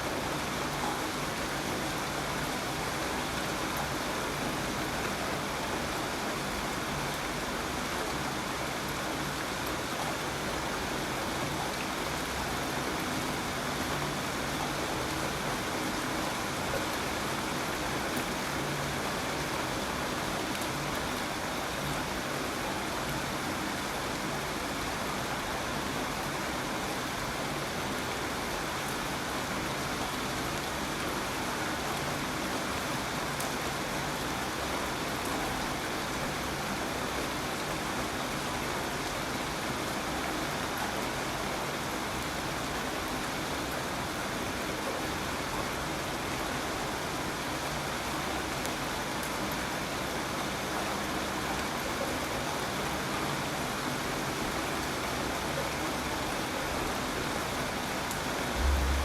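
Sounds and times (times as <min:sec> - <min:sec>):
steady rainfall: 0:00.0 - 0:59.0.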